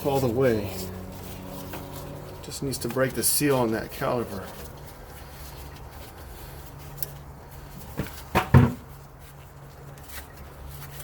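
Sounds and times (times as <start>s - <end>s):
low steady hum: 0.0s - 8.2s.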